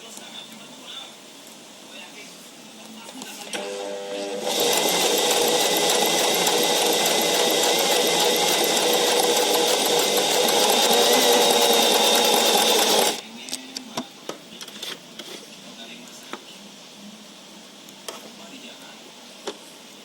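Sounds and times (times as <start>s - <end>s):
sewing machine motor whine: 3.6s - 13.2s.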